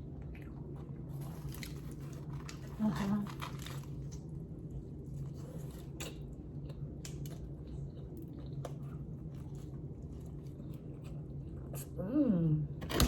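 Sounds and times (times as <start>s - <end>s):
steady low hum: 0.0s - 13.0s
person chewing food: 3.4s - 11.8s.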